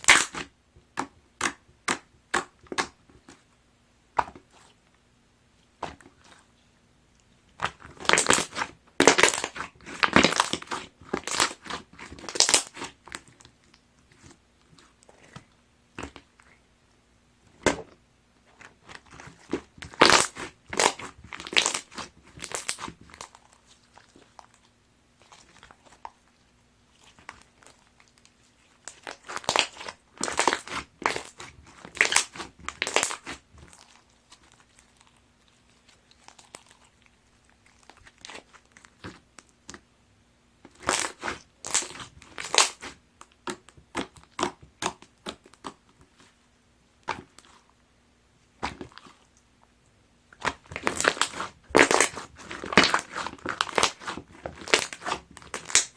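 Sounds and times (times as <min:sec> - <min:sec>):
slime squeezed by hand: 0:00.0 - 0:00.5, 0:18.9 - 0:24.6, 0:27.0 - 0:37.0, 0:40.7 - 0:46.4, 0:50.4 - 0:55.9.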